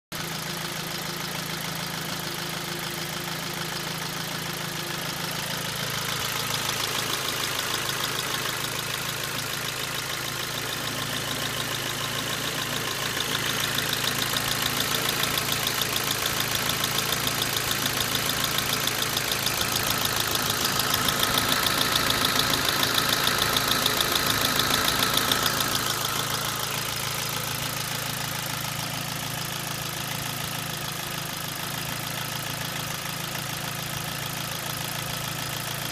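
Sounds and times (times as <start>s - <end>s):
car engine running with knock: 5.0s - 30.7s.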